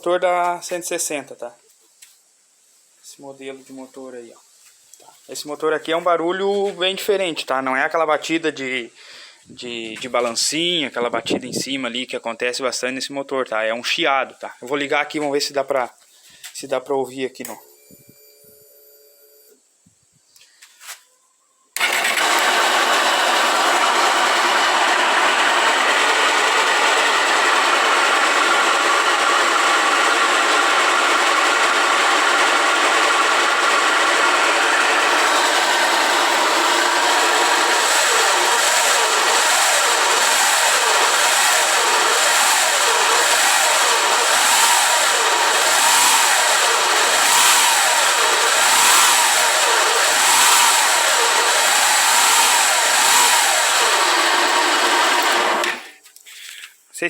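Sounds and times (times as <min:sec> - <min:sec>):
motorcycle engine running: 0:21.8 - 0:55.9
engine hiss: 0:21.8 - 0:56.6.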